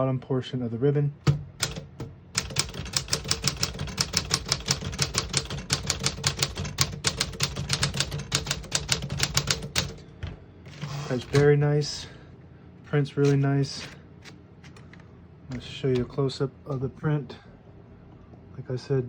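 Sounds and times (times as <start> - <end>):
typewriter keystrokes: 1.3 - 10.0.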